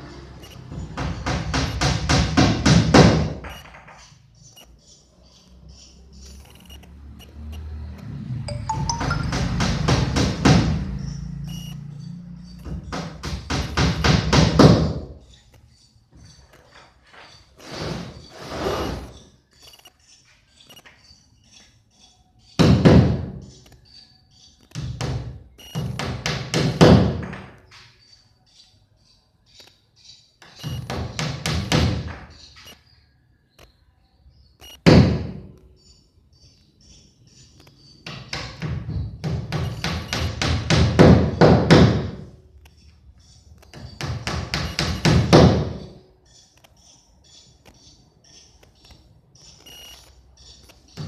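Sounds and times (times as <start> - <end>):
hammer blows ringing: 8.5 - 15.2.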